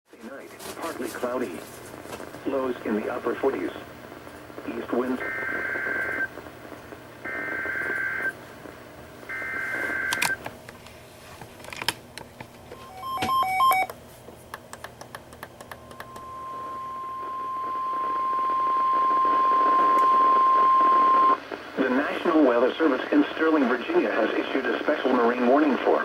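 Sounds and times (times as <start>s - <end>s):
steady single-pitch alarm tone: 12.8s - 13.9s, 15.7s - 21.4s
clicks: 13.2s - 21.4s
short beeps: 15.8s - 21.4s
shrill two-tone data bursts: 15.8s - 21.4s.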